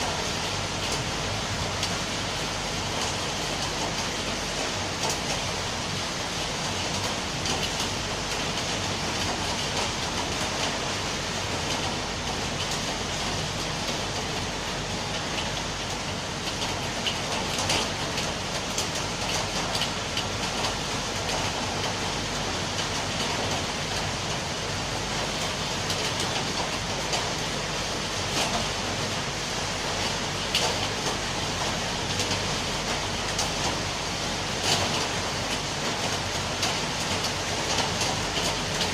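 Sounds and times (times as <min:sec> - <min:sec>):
steady rain falling: 0:00.0 - 0:38.9.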